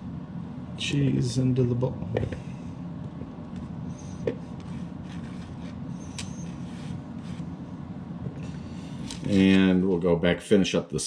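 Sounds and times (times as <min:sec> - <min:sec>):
low background hum: 0:00.0 - 0:11.0.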